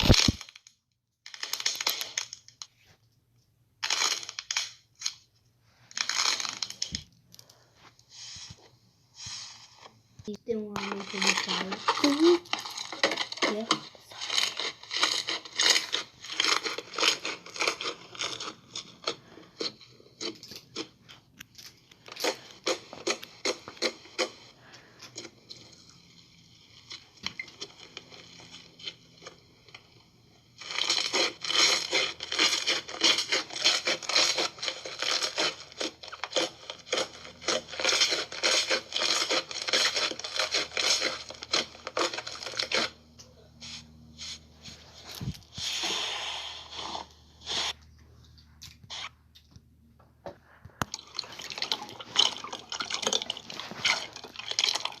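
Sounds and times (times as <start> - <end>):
slime crackling and popping: 0.0 - 2.7, 3.8 - 5.3, 5.9 - 7.6, 10.5 - 43.0, 50.8 - 55.0.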